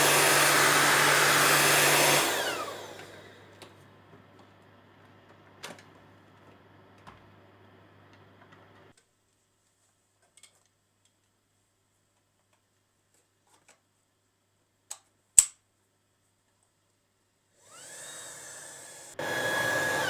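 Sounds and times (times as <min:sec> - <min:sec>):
sharp plastic clicks: 0:14.9 - 0:15.6.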